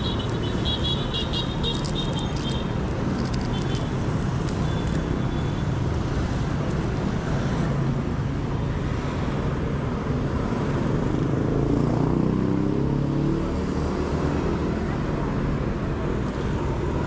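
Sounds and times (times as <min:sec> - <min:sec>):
motorbike engines passing: 0:00.0 - 0:04.4.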